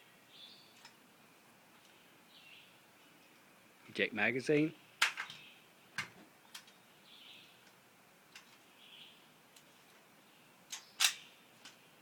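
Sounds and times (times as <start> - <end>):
rifle metal clicks: 10.7 - 11.8.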